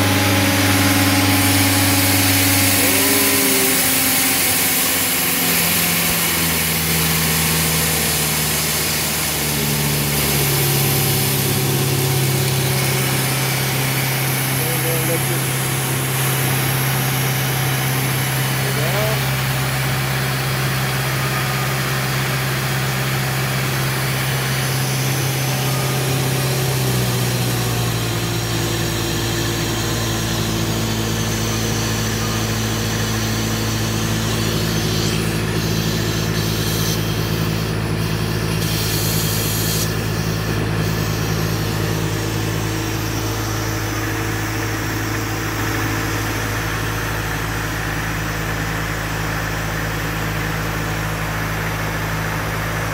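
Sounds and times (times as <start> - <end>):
machine hum: 0.0 - 52.9.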